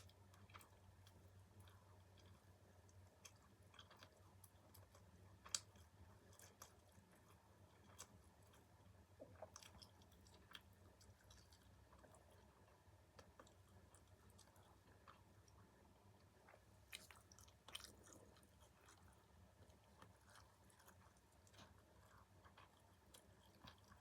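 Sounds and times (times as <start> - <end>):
person chewing food: 0.0 - 24.0.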